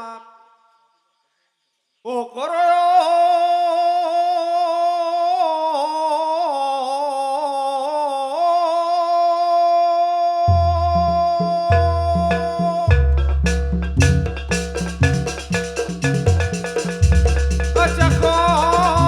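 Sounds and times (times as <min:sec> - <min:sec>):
low drum beats: 0:10.5 - 0:19.0.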